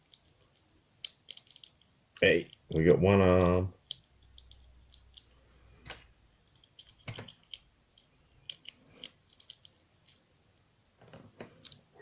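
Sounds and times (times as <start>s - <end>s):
small plastic clicks and taps: 3.4s - 11.9s.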